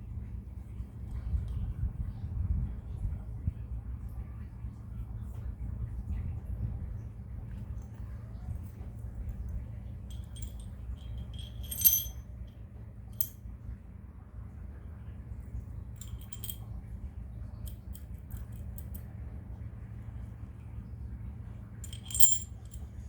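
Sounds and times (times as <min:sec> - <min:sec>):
light metallic jingles: 0:07.8 - 0:13.4, 0:15.9 - 0:16.9, 0:17.5 - 0:19.1, 0:21.8 - 0:23.0.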